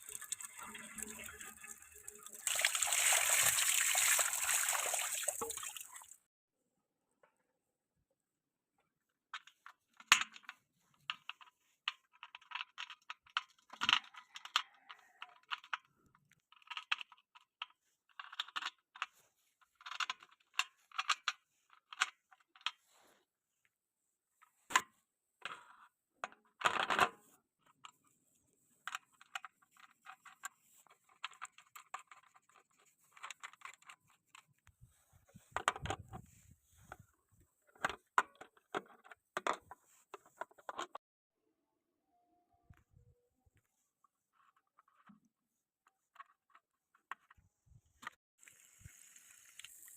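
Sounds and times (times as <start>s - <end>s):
tools and parts rattling: 9.3s - 22.9s, 28.8s - 34.6s.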